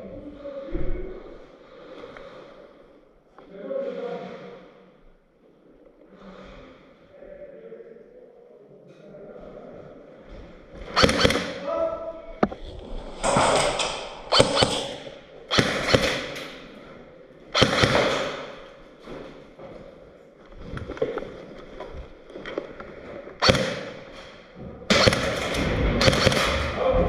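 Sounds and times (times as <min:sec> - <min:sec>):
airsoft guns firing: 0:10.9 - 0:11.6, 0:13.2 - 0:16.6, 0:17.5 - 0:18.7, 0:23.4 - 0:24.2, 0:24.9 - 0:27.0.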